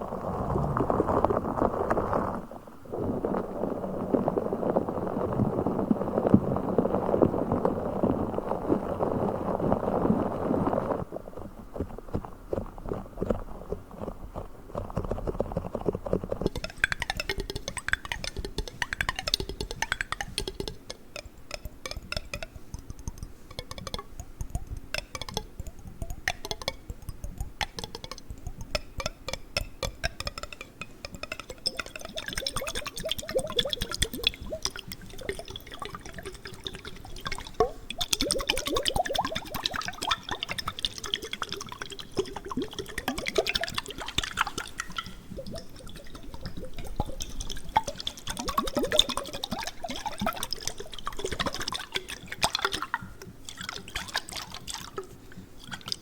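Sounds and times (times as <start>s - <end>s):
clicks and taps on jar: 11.8s - 56.0s
water sloshing in jar: 14.9s - 56.0s.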